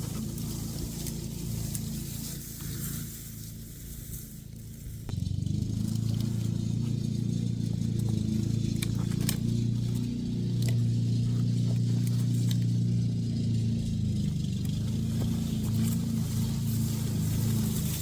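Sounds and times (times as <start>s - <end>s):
light rattles and clicks: 0.0s - 18.0s
motor engine running low: 0.0s - 18.0s.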